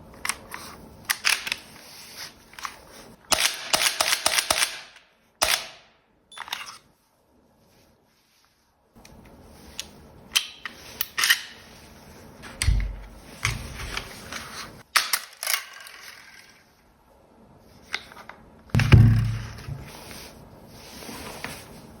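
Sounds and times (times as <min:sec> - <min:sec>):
toy gun clicks and snaps: 0:03.3 - 0:05.8
heavy thumps: 0:18.8 - 0:19.9.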